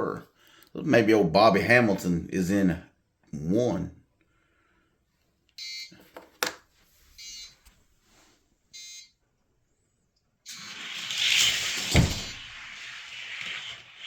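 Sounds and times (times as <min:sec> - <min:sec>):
electronic countdown beeps: 0:05.6 - 0:05.9, 0:07.2 - 0:07.5, 0:08.8 - 0:09.1.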